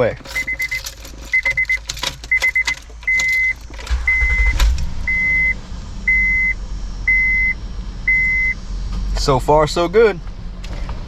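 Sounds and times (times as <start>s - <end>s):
keys clicking in ignition: 0.0s - 4.8s
car engine cranking: 0.0s - 9.4s
car engine idling: 0.0s - 10.7s
dashboard chime beeping: 0.3s - 8.6s.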